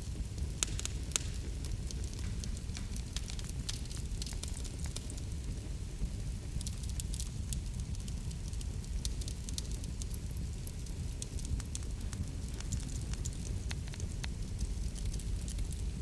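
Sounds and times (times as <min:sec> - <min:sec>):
wood fire crackling and popping: 0:00.0 - 0:16.0.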